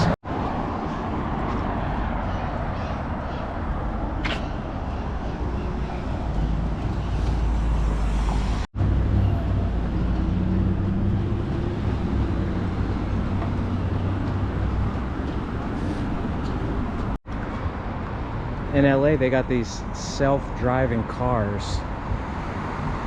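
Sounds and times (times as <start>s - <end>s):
vehicle engine humming: 0.0s - 17.8s
traffic rumble: 0.0s - 23.0s.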